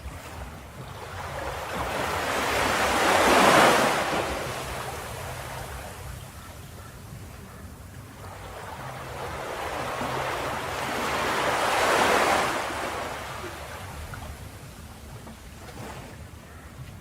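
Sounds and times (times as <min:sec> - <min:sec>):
ocean waves breaking: 0:00.0 - 0:17.0.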